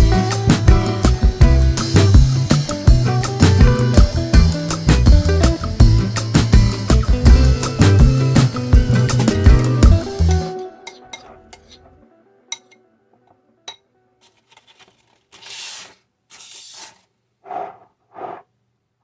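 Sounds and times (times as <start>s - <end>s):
utensil scraping in bowl: 14.2s - 18.4s.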